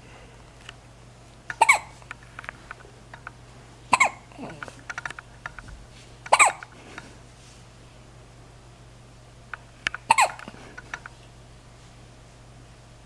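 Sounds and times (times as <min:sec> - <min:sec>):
person hiccuping: 0:01.6 - 0:02.0, 0:03.9 - 0:04.8, 0:06.3 - 0:06.7, 0:10.1 - 0:10.6
faint clicks: 0:04.5 - 0:07.1, 0:09.5 - 0:11.3.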